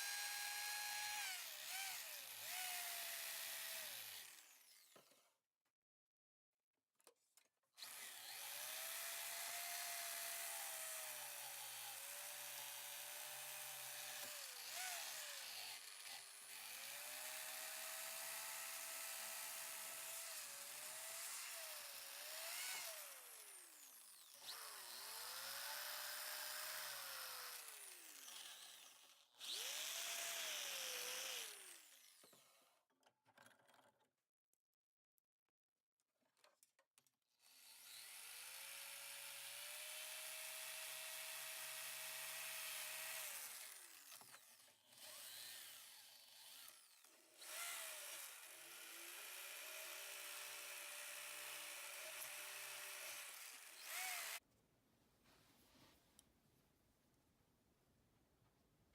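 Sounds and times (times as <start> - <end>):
power tool motor whine: 0.0 - 5.1, 7.8 - 32.6, 37.4 - 54.4.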